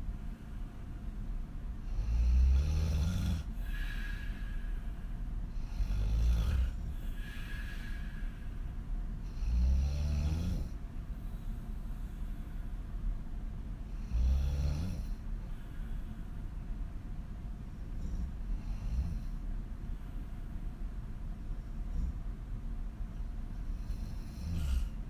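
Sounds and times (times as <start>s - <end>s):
woman snoring: 1.9s - 4.7s, 5.6s - 8.4s, 9.3s - 10.8s, 14.0s - 15.2s, 18.0s - 19.3s, 23.8s - 25.0s.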